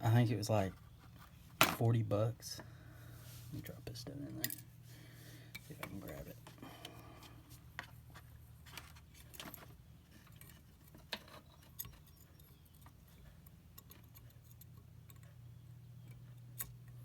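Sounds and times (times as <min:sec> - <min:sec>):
low steady hum: 0:00.0 - 0:17.0
light clicks and metallic taps: 0:10.4 - 0:17.0.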